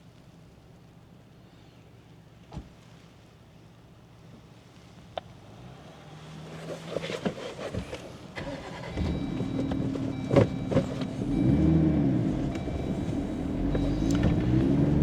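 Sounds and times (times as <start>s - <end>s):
off-road vehicle engine revving: 5.6s - 15.0s.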